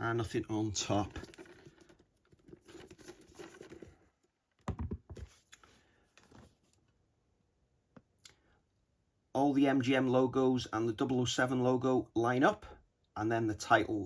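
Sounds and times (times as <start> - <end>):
box handling rubs and taps: 4.6 - 5.6.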